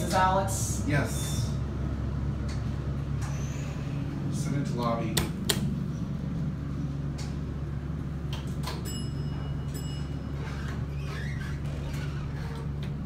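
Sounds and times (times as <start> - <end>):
elevator cab hum: 0.0 - 13.0
elevator clicks: 8.2 - 10.2.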